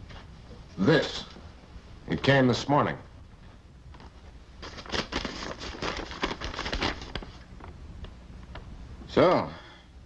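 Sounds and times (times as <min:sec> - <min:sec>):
paper rustling and crackling: 0:04.0 - 0:07.7.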